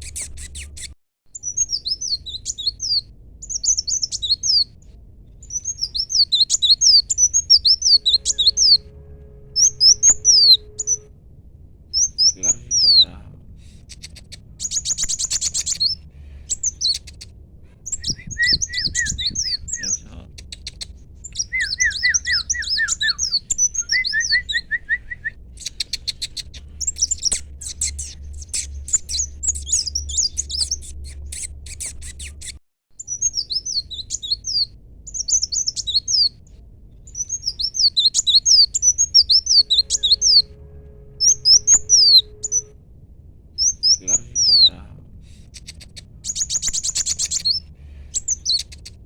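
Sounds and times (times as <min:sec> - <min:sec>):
sunbird singing: 0:01.4 - 0:04.7, 0:05.4 - 0:08.9, 0:09.5 - 0:11.1, 0:11.9 - 0:13.2, 0:13.9 - 0:17.3, 0:17.9 - 0:36.4, 0:37.1 - 0:40.5, 0:43.6 - 0:44.8.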